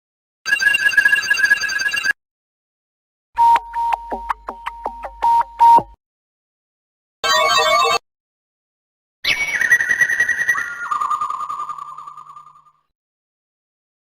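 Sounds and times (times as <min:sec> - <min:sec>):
clicking beeping ringtone: 0:00.5 - 0:02.2
high electronic ringtone: 0:00.5 - 0:02.2, 0:07.2 - 0:08.0.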